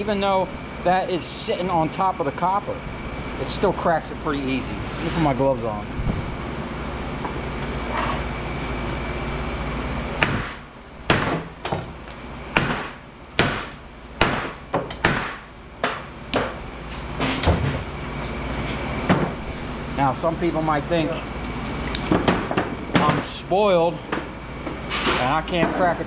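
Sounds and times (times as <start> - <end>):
steady machine hum: 0.0 - 26.0
hammer striking steel: 10.2 - 16.6.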